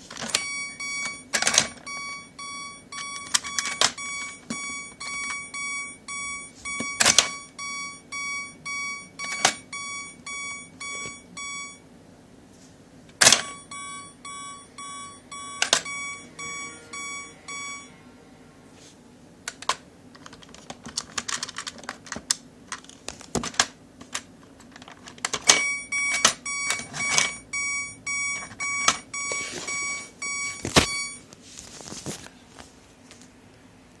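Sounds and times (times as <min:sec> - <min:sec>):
toy electronic warning bell beeping: 0:00.3 - 0:11.8, 0:13.2 - 0:18.0, 0:25.5 - 0:31.2.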